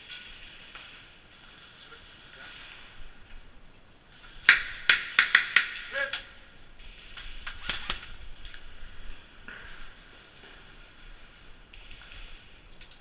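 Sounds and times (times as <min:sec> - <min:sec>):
airsoft guns firing: 0:04.1 - 0:08.8.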